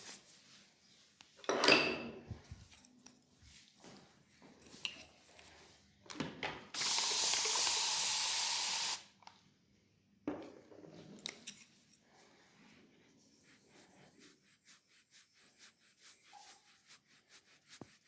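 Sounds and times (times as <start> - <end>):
spray hissing: 6.8 - 9.0.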